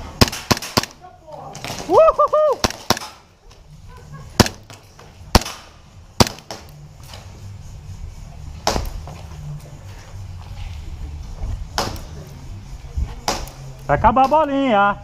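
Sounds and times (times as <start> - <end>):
low rumble of wind: 0.0 - 15.0
airsoft pistol shots: 0.1 - 1.0, 2.6 - 3.2, 4.4 - 4.7, 5.3 - 6.8.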